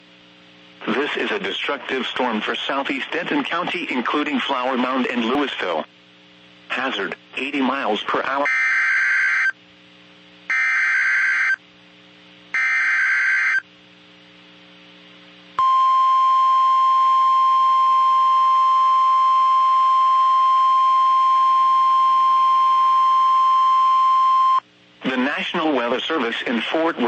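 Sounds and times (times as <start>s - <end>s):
harsh digital header tones: 8.4s - 9.6s, 10.5s - 11.6s, 12.6s - 13.6s
steady warning alarm tone: 8.5s - 9.6s, 10.5s - 11.6s, 12.6s - 13.6s.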